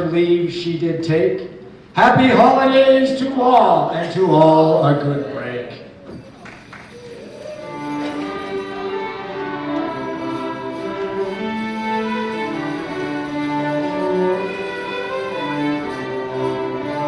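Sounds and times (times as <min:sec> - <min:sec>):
string orchestra playing: 0:07.6 - 0:17.0.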